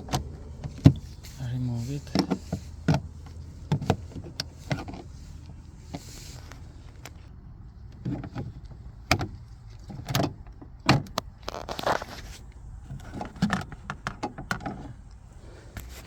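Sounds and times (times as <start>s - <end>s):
scraping rustle: 0.0s - 7.3s, 11.4s - 16.0s.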